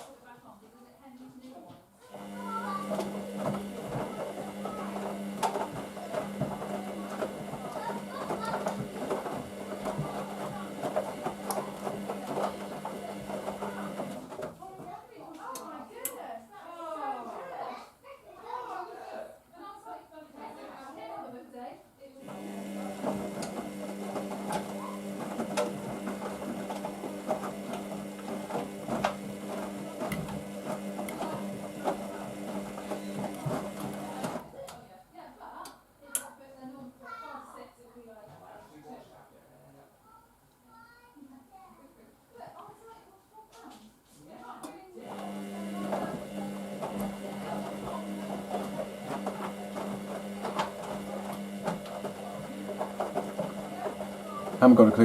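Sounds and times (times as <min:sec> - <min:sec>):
washing machine motor hum: 0:02.1 - 0:14.7, 0:22.2 - 0:34.6, 0:45.0 - 0:55.0.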